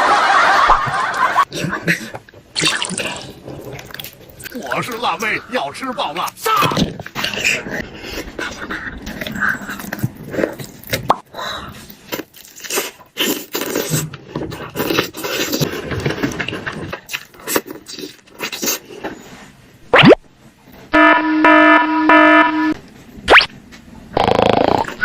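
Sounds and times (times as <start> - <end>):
person chewing crunchy food: 2.6 - 4.7, 11.8 - 18.9.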